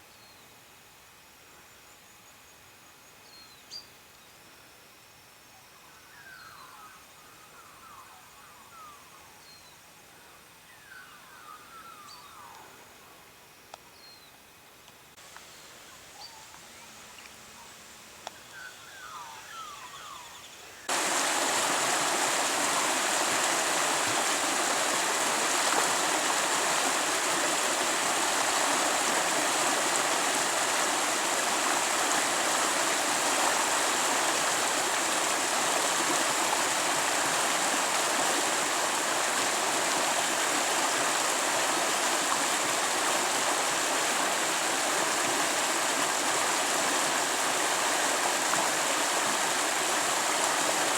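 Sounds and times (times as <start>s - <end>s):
stream water rushing: 20.9s - 50.9s.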